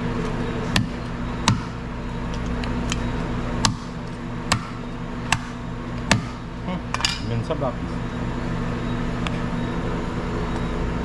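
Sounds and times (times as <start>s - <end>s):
knife chopping on cutting board: 0.7s - 1.8s, 3.6s - 6.4s.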